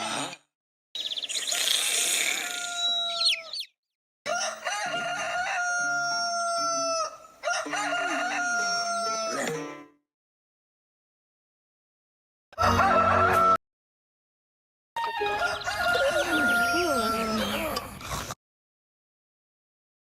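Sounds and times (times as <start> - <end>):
rooster crowing: 2.4 - 3.5, 4.3 - 9.4, 12.6 - 13.6, 15.0 - 17.8.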